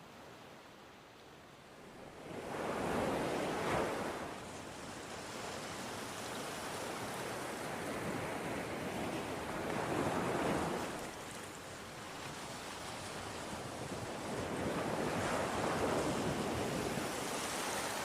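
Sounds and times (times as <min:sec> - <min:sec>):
sea waves: 0:00.0 - 0:18.0
wind on microphone: 0:12.3 - 0:18.0.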